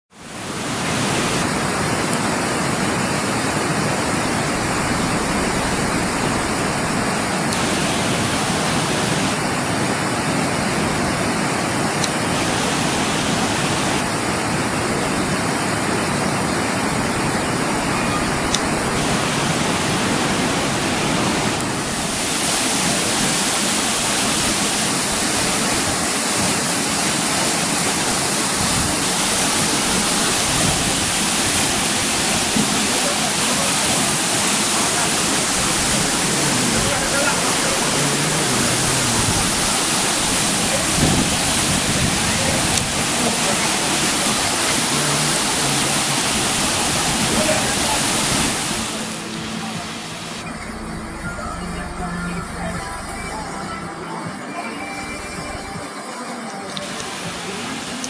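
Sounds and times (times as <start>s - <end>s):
waterfall rushing: 0.1s - 58.0s.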